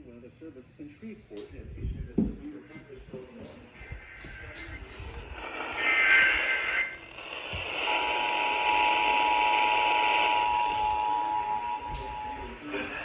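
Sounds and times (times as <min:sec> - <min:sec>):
warbling data burst: 0:05.4 - 0:12.4
steady two-tone attention signal: 0:08.8 - 0:12.6.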